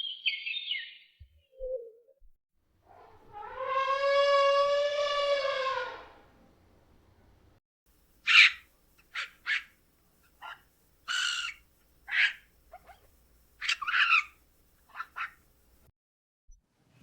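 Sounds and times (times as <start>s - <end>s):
bird harsh screechy calls: 8.2s - 9.7s, 10.4s - 12.9s, 13.6s - 15.4s.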